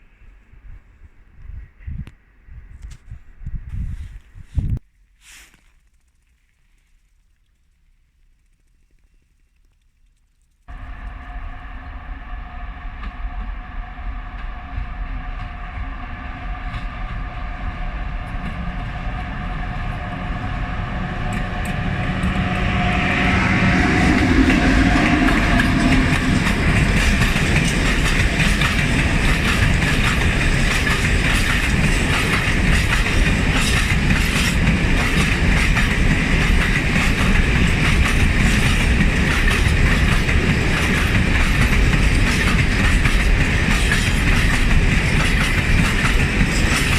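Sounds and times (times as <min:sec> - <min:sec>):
train humming: 0:10.7 - 0:46.9
wheels clattering over rail joints: 0:24.0 - 0:46.9.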